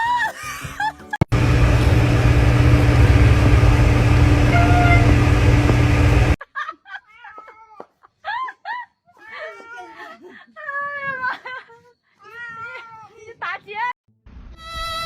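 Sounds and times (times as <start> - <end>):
loud steady humming noise: 1.3 - 6.4.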